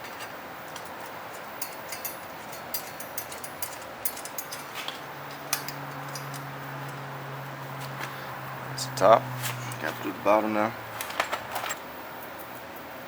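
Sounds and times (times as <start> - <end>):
small metal parts clinking: 0.0 - 7.1, 9.4 - 12.9.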